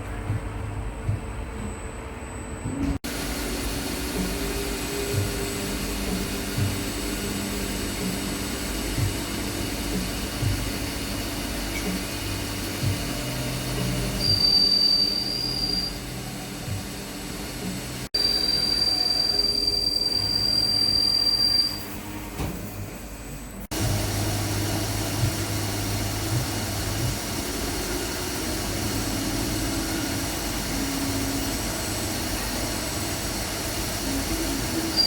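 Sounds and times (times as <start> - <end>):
machinery running: 2.8 - 35.0
high-pitched squeal: 13.9 - 16.4, 18.2 - 22.3.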